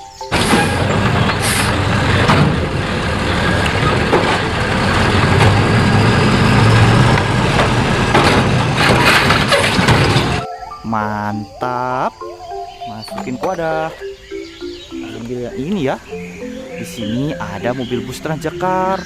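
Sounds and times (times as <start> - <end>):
sharp knocks: 0.3 - 10.4
truck engine running: 0.3 - 10.4.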